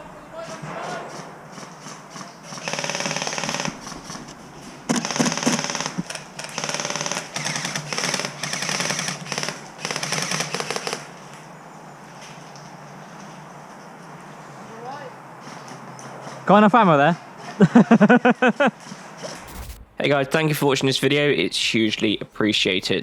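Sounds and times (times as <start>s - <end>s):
airsoft gun firing bursts: 0.4s - 11.2s.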